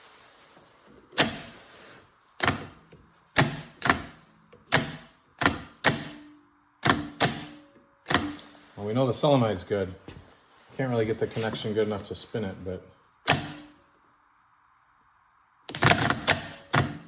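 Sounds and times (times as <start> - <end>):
starter solenoid clacking: 2.4 - 8.5.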